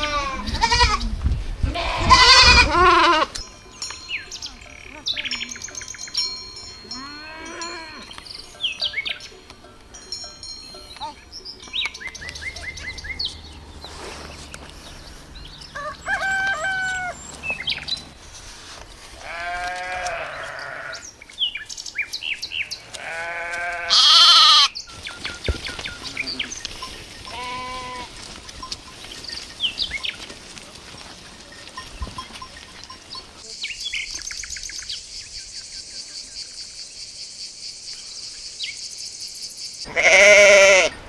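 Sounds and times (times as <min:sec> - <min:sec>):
sheep bleating: 0:00.0 - 0:03.4, 0:06.9 - 0:08.1, 0:19.2 - 0:21.0, 0:22.9 - 0:24.7, 0:27.3 - 0:28.1, 0:39.9 - 0:41.0
small birds chirping: 0:03.4 - 0:06.7, 0:07.3 - 0:18.2, 0:19.2 - 0:23.8, 0:24.7 - 0:41.0.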